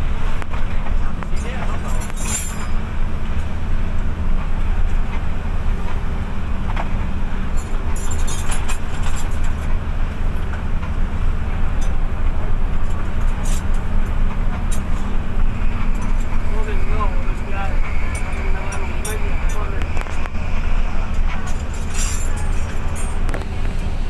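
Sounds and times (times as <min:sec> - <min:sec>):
bus diesel engine droning: 0:00.0 - 0:24.0
short rattles: 0:01.2 - 0:02.8, 0:06.7 - 0:09.7, 0:21.2 - 0:23.9.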